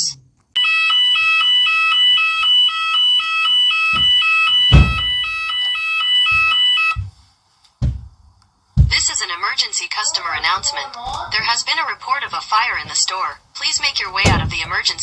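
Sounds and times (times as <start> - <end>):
recorded evacuation messages: 0.0 - 7.2, 8.8 - 15.0
fire alarm warbling tone: 0.6 - 7.0
low thumps: 4.0 - 5.5, 6.3 - 7.2, 7.8 - 9.2, 10.4 - 11.6, 12.3 - 13.1, 13.8 - 15.0.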